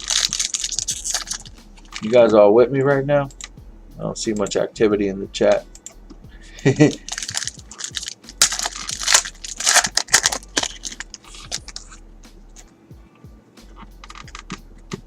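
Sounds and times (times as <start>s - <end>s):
trading cards rustling: 0.0s - 2.4s, 6.8s - 12.0s, 14.0s - 14.6s
faint background music: 0.0s - 15.0s.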